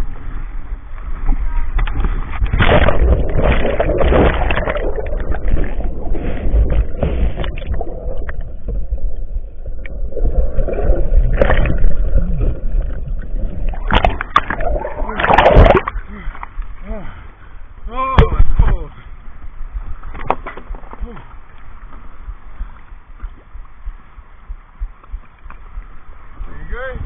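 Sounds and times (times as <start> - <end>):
river water rushing around kayak: 0.0 - 27.0
sharp splashes or knocks: 2.3 - 8.8, 13.7 - 16.0.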